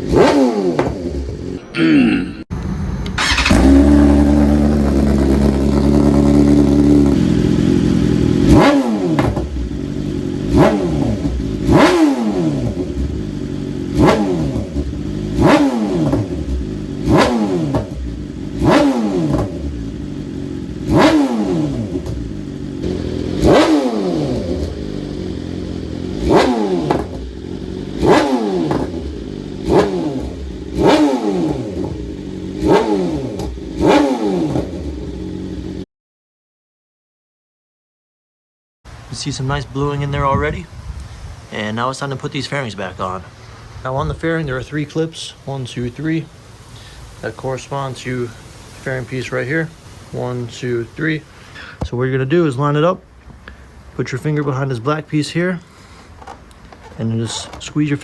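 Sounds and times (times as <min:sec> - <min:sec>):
motorcycle engine idling: 0:00.0 - 0:01.6, 0:02.6 - 0:35.8
motorcycle engine revving: 0:00.0 - 0:01.7, 0:02.5 - 0:35.8.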